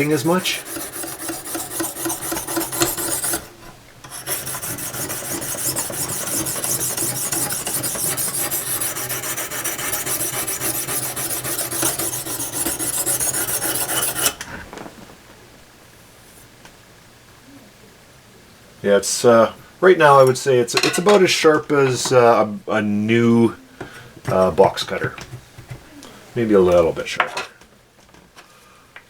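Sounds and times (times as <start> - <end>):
hone stone scraping steel blade: 0.0 - 14.4.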